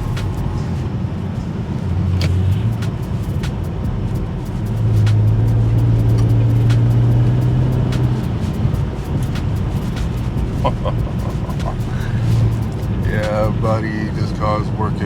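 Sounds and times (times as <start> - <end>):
car engine accelerating: 0.0 - 15.0
sharp clicks: 2.2 - 13.4.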